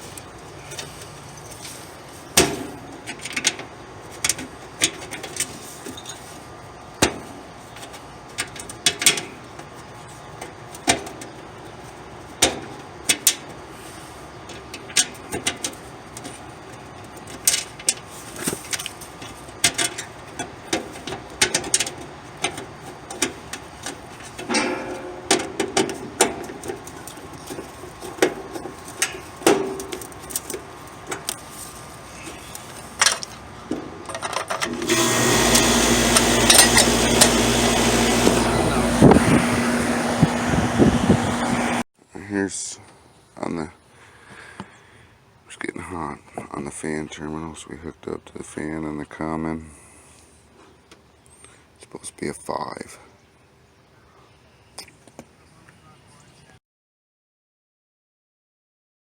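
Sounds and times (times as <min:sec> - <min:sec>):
condenser unit humming: 0:00.0 - 0:41.8
tools clicking and tapping: 0:19.6 - 0:31.4.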